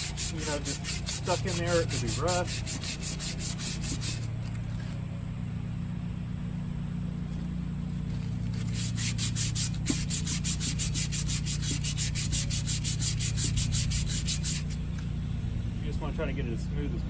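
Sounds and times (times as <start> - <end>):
sandpaper rubbing on metal: 0.0 - 5.0, 8.1 - 14.8
steady low hum: 0.0 - 17.0.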